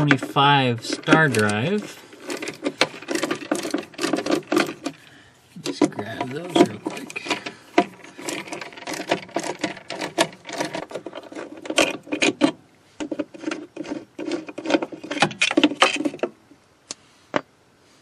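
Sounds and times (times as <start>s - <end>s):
hand tool scraping on metal: 0.0s - 16.2s.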